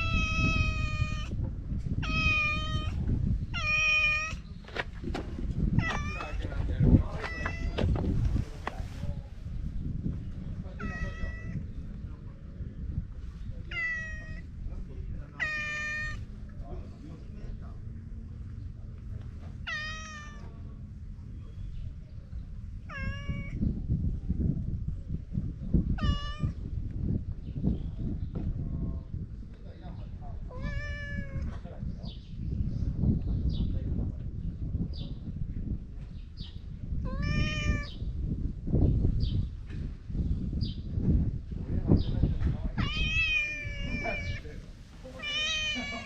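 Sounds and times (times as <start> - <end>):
cat meowing: 0.0 - 1.4, 2.0 - 4.5, 5.7 - 6.4, 7.2 - 8.0, 10.8 - 11.6, 13.6 - 14.5, 15.4 - 16.3, 19.6 - 20.5, 22.9 - 23.6, 26.0 - 26.6, 30.5 - 31.5, 37.0 - 38.0, 42.8 - 44.4, 45.2 - 46.0.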